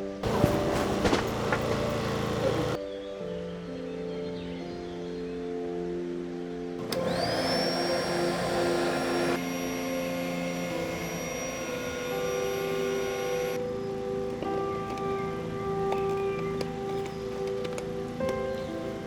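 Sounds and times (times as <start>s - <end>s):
background music: 0.0s - 19.0s
small motor whirring: 0.2s - 2.8s, 6.8s - 13.6s.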